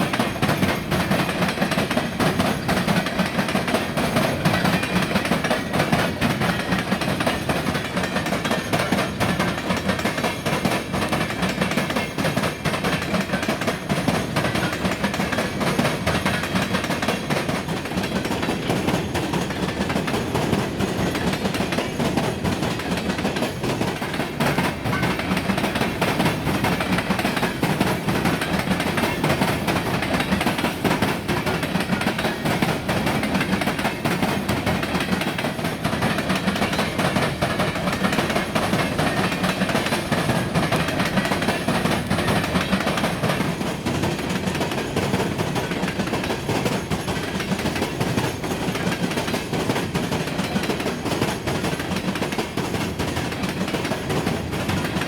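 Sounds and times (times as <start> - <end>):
train wheels clattering over rail joints: 0.0 - 55.0.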